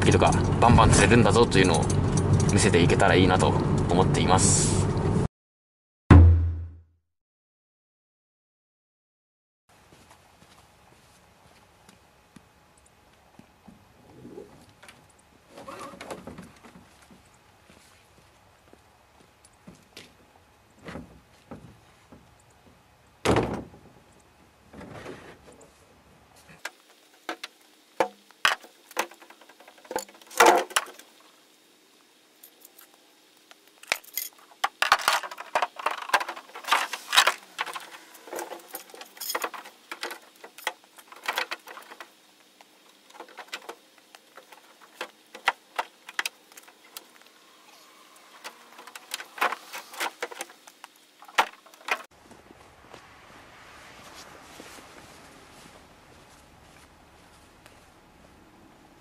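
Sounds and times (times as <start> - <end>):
hard objects clinking and rattling: 33.8 - 42.1.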